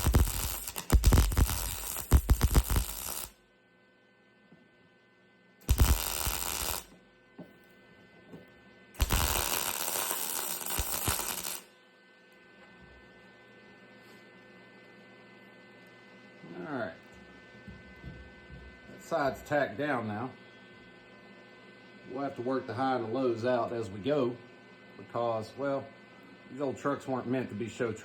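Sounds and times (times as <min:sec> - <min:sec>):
welding arc crackling: 0:00.0 - 0:03.4, 0:05.6 - 0:07.0, 0:09.0 - 0:11.7
steady low hum: 0:00.0 - 0:28.0.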